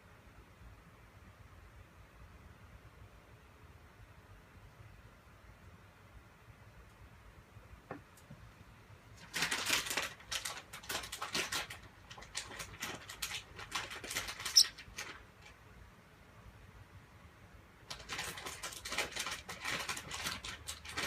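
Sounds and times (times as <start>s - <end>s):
bird scratchy clicks and rustles: 9.2s - 15.6s, 17.9s - 21.0s
bird high squeak: 14.5s - 14.8s.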